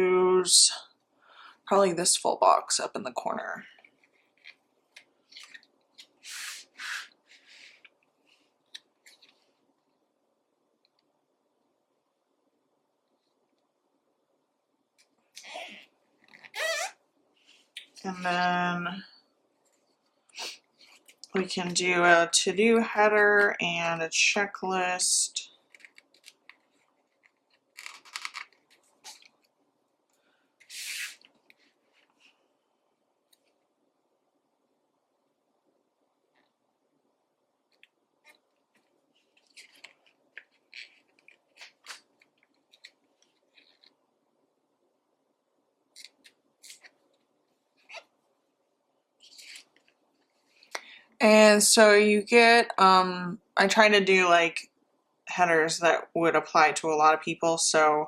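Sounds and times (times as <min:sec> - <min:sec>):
paper tearing rasp: 0:06.2 - 0:07.5, 0:30.7 - 0:31.3
stickers peeling crackly clicks: 0:25.7 - 0:29.4
sticker peeling swish: 0:30.7 - 0:31.2.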